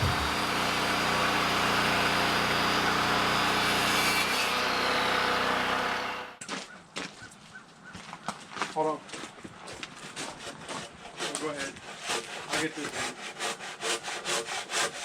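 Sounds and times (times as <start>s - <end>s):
power saw cutting wood: 0.0s - 6.4s, 10.2s - 15.0s.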